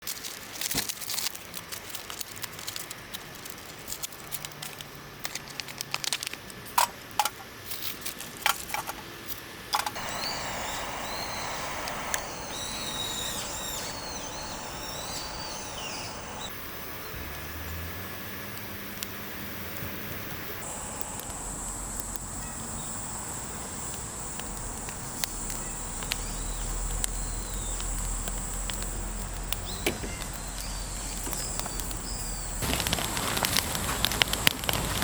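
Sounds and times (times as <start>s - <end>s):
firewood crackling and popping: 0.0s - 9.0s, 9.7s - 35.0s
fire hissing with high whistles: 9.7s - 35.0s.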